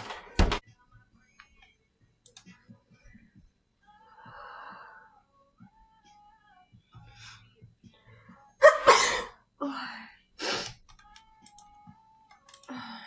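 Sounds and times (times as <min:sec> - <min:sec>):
woman breathing: 0:04.0 - 0:05.2
woman sneezing: 0:08.6 - 0:09.4.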